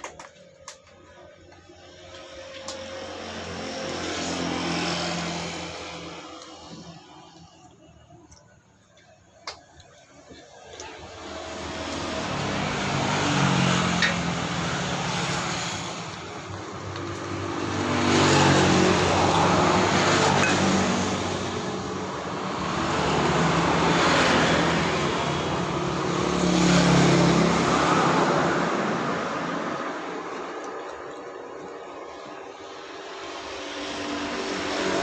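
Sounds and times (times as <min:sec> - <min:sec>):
vehicles passing: 0:00.0 - 0:35.0.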